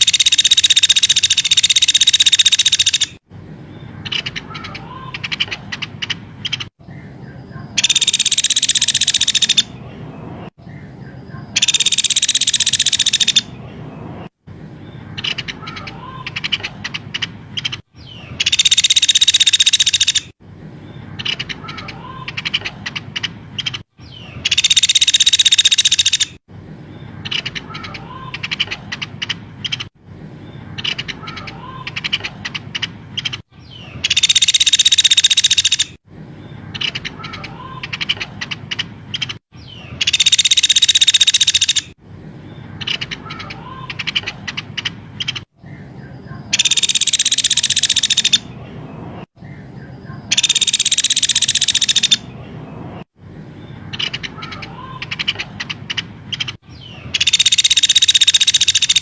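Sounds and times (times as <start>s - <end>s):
songbird buzzing trills: 0.0s - 3.2s, 7.8s - 9.7s, 11.6s - 13.5s, 18.4s - 20.4s, 24.5s - 26.4s, 34.1s - 36.0s, 40.0s - 42.0s, 46.6s - 48.4s, 50.3s - 52.2s, 57.2s - 59.0s
bird chirps and whistles: 56.7s - 59.0s.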